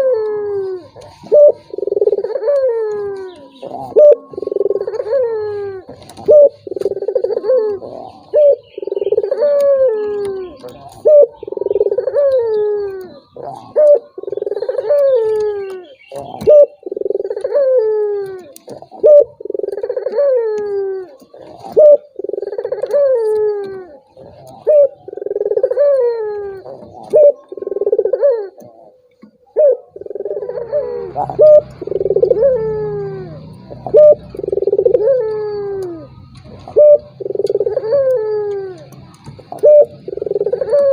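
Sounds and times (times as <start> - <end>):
doves cooing: 0.0 - 40.9.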